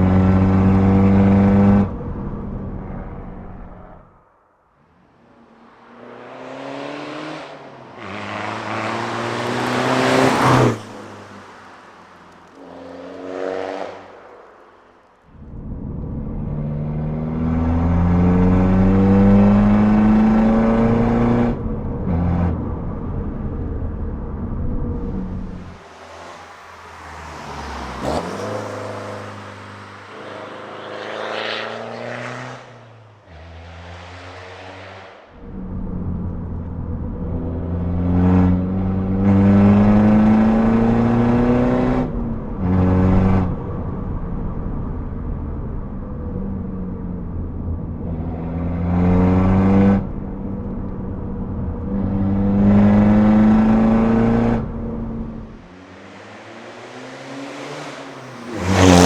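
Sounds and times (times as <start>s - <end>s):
diesel engine accelerating hard: 0.0s - 4.0s, 15.3s - 32.7s, 33.3s - 59.0s
diesel engine exhaust accelerating: 35.3s - 55.7s.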